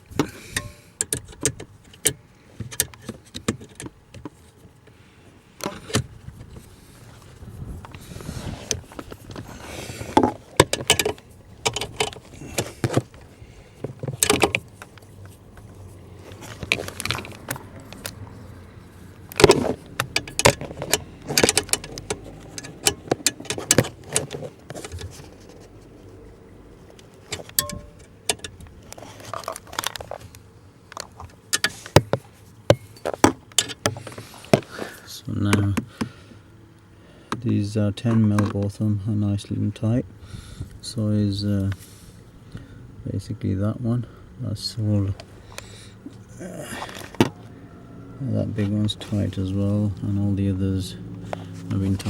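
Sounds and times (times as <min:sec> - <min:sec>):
hand tool clicking on bolts: 0:27.4 - 0:28.6.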